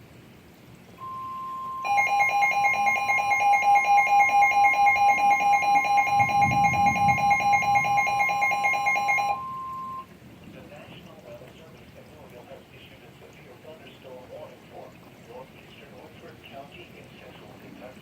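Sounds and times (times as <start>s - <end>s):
rapidly pulsing electronic alarm beep: 1.0s - 10.1s
steady warning alarm tone: 1.0s - 10.1s.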